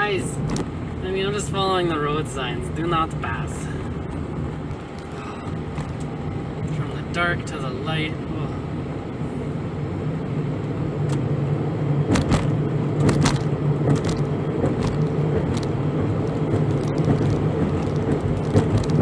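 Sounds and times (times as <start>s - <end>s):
road and engine noise: 0.0s - 19.0s
sharp clicks and rattles: 0.4s - 0.8s, 4.7s - 6.1s, 12.1s - 19.0s.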